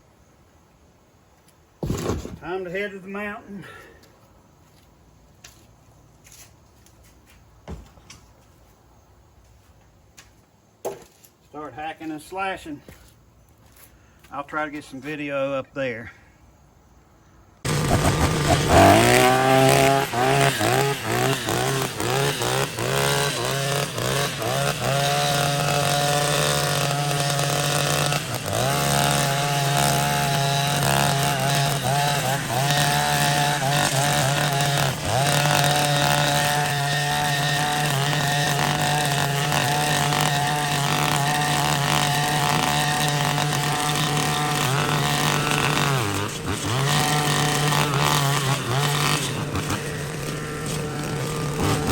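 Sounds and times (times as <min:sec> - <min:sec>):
string trimmer engine revving: 0:17.6 - 0:51.9.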